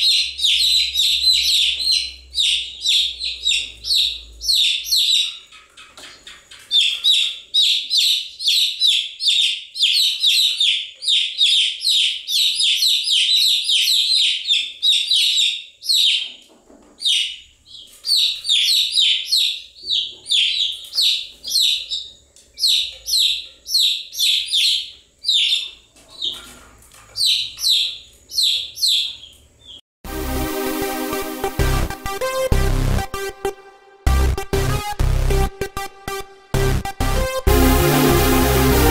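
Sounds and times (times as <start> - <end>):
baby chicks peeping: 0.0 - 29.8
electronic music: 30.0 - 38.9.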